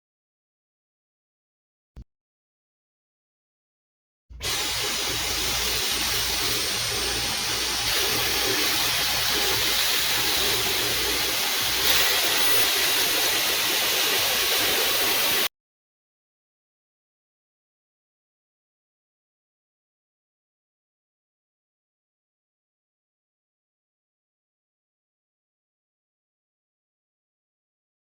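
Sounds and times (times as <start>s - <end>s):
cordless vacuum running: 4.4s - 15.5s.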